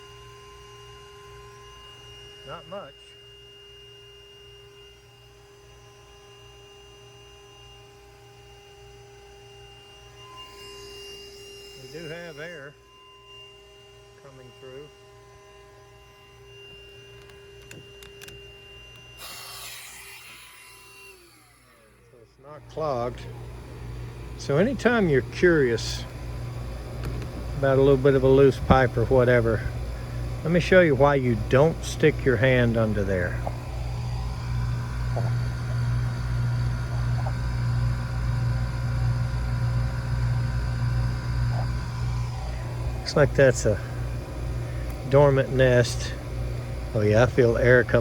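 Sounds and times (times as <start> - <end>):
steady hum: 0.0 - 48.0.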